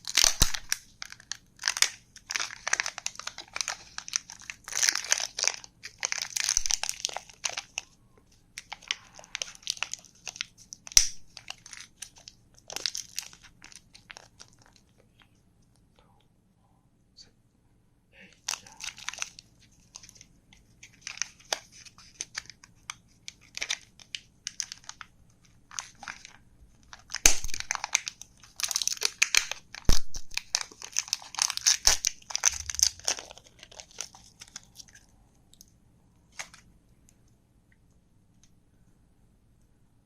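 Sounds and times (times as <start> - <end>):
foil wrappers crinkling and tearing: 0.0 - 8.0, 8.6 - 15.0, 18.4 - 35.0.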